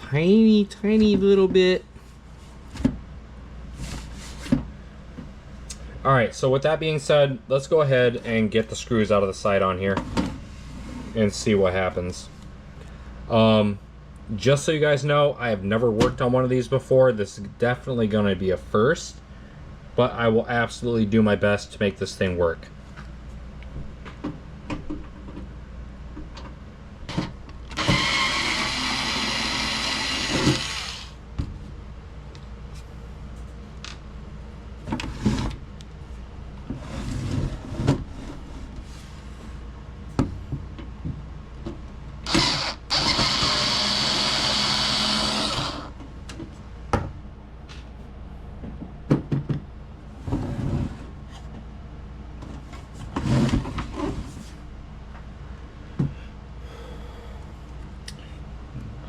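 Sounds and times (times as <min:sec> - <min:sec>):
power drill running: 0:27.7 - 0:31.2, 0:42.2 - 0:45.9.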